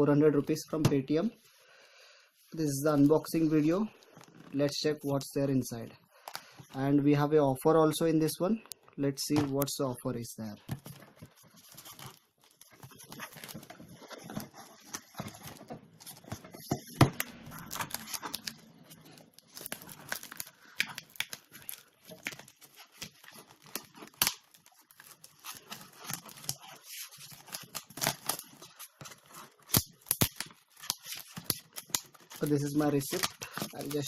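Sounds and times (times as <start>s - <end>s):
packaging crinkling and rustling: 10.6s - 34.0s.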